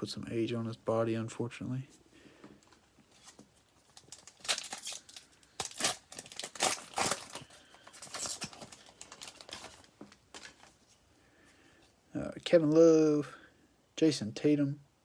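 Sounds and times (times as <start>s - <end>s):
wrapper tearing and crinkling: 3.2s - 10.7s.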